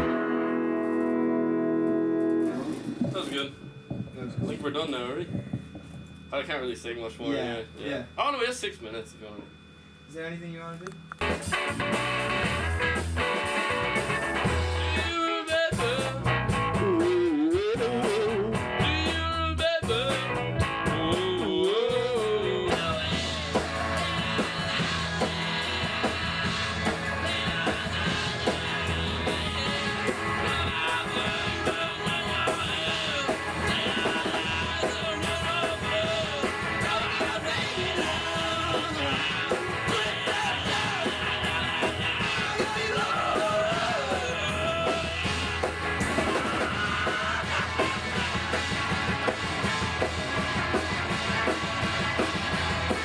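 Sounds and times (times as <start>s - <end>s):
rock band playing: 0.0s - 6.0s, 11.2s - 53.0s
person singing: 14.8s - 48.2s.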